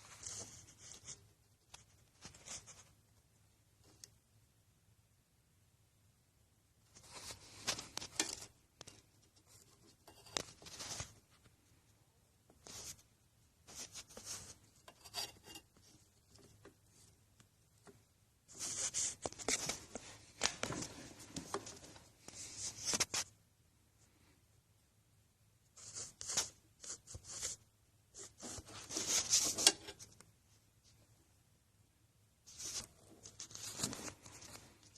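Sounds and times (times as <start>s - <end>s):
hands rustling and scraping: 32.5s - 34.9s.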